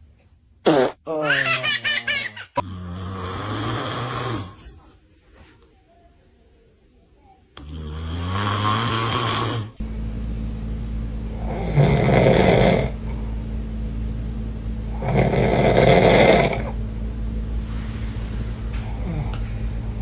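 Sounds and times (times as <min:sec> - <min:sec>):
man snoring: 0:02.6 - 0:04.8, 0:07.6 - 0:09.8, 0:11.3 - 0:13.4, 0:14.9 - 0:16.8, 0:18.7 - 0:19.6.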